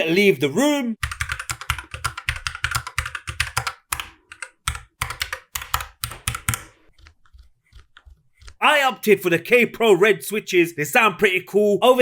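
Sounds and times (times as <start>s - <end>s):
mechanical keyboard typing: 1.0s - 8.7s.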